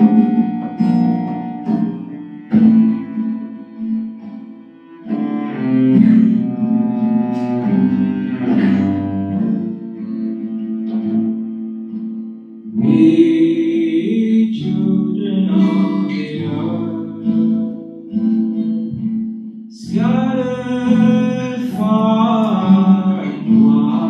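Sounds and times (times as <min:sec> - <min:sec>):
person singing: 0:00.0 - 0:03.8, 0:05.1 - 0:06.8, 0:12.8 - 0:18.1, 0:19.7 - 0:24.0
sustained instrumental chords: 0:00.0 - 0:11.9.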